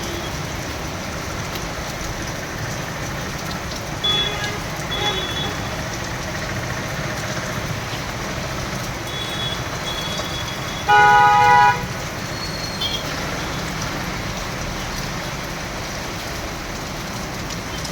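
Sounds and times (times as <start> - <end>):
heavy rain: 0.0 - 17.9
vehicle horn: 4.0 - 5.7, 9.1 - 12.0.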